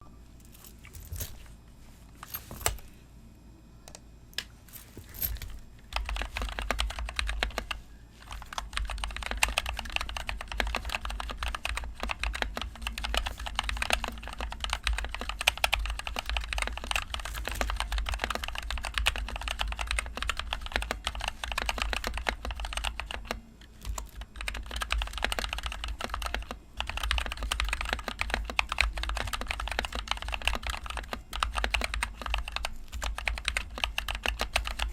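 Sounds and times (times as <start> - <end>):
mechanical keyboard typing: 5.3 - 34.9.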